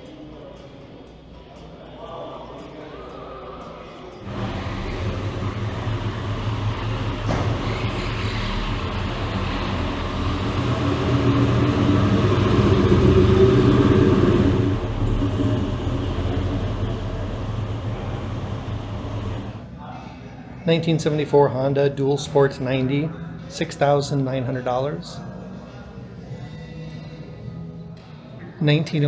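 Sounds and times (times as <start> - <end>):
vehicle engine rumbling: 4.2 - 21.3.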